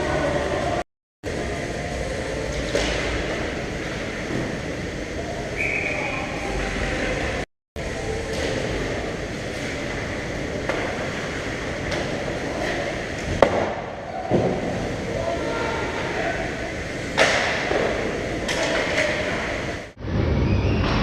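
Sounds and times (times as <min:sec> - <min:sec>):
hockey sticks and puck clacking: 0:02.5 - 0:04.6, 0:08.2 - 0:14.8, 0:17.0 - 0:19.8.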